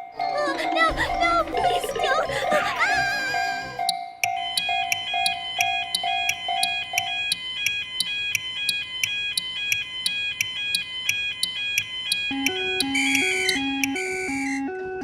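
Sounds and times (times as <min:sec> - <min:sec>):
railroad crossing warning bells: 0:03.7 - 0:07.5
lower melody: 0:12.3 - 0:15.0.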